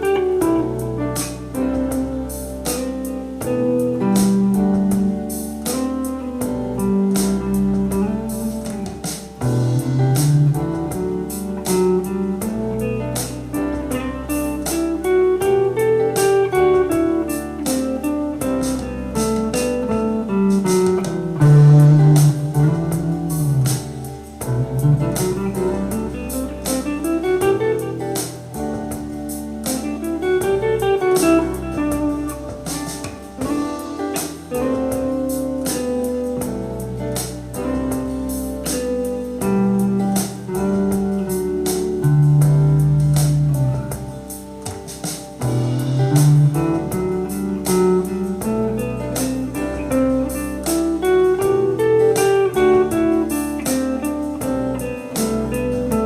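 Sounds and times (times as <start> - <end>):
backing track with drums and bass: 0.0 - 56.0
guitar playing quick scale runs: 0.0 - 56.0.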